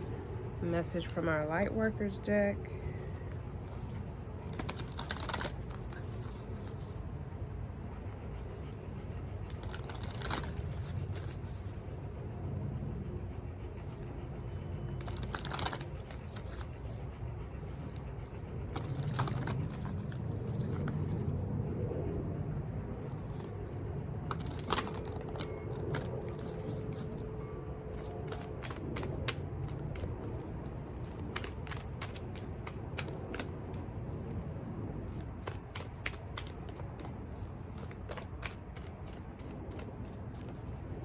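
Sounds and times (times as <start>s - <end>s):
cards shuffling: 2.8s - 7.6s, 8.4s - 12.3s, 13.8s - 21.5s, 23.1s - 41.0s.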